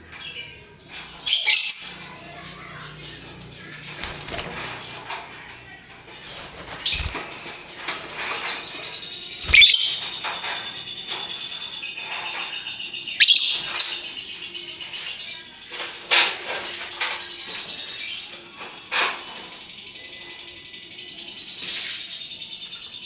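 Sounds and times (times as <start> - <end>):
bird trilling chatter: 1.2 - 15.5
bird shrieks: 9.4 - 10.1.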